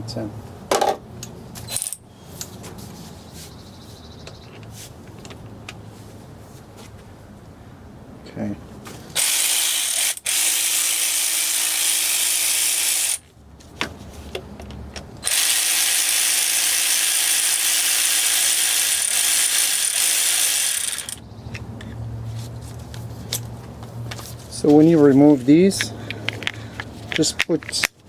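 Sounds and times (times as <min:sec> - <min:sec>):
power ratchet running: 0:01.7 - 0:02.0, 0:09.2 - 0:13.2, 0:15.2 - 0:21.2
ratchet clicks: 0:01.7 - 0:02.0, 0:09.2 - 0:13.2, 0:15.2 - 0:21.2.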